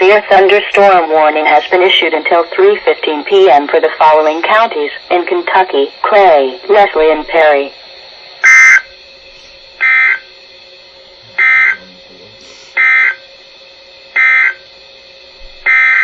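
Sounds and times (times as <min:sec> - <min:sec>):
screeching two-tone data bursts: 0:08.4 - 0:09.0, 0:09.8 - 0:10.3, 0:11.4 - 0:11.9, 0:12.8 - 0:13.2, 0:14.2 - 0:14.7, 0:15.6 - 0:16.0.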